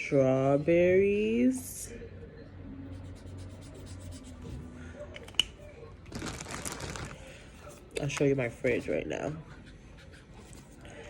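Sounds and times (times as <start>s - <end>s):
scratchy drawing strokes on paper: 2.9s - 4.5s.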